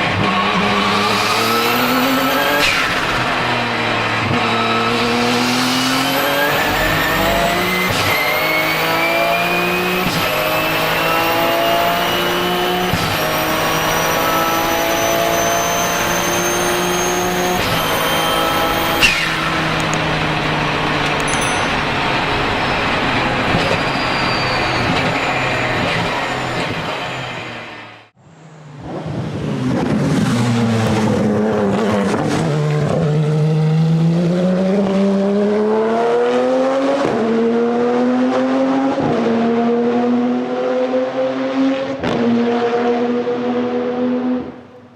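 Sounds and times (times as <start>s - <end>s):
race car engine accelerating: 0.0s - 44.9s
turbo whistle: 0.3s - 3.7s, 15.0s - 19.9s, 23.5s - 27.5s.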